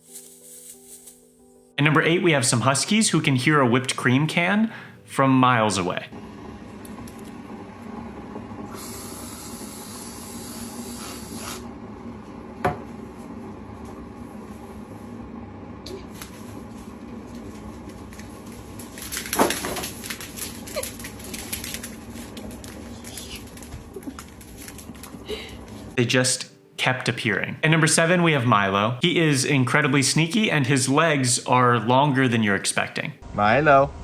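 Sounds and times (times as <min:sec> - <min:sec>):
whipped cream can hissing: 0:00.0 - 0:01.2, 0:08.7 - 0:11.7.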